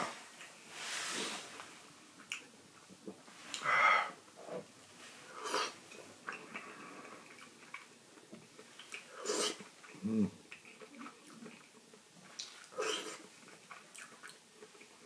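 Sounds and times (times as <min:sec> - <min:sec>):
person sniffing and slurping: 0:05.3 - 0:05.8, 0:09.1 - 0:09.6, 0:12.7 - 0:13.3.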